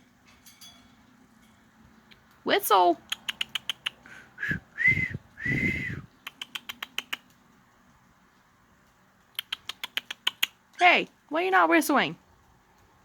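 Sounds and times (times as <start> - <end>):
quick clicking sounds: 3.0 - 4.0, 6.2 - 7.6, 9.2 - 10.7
whistled notes: 4.4 - 6.1.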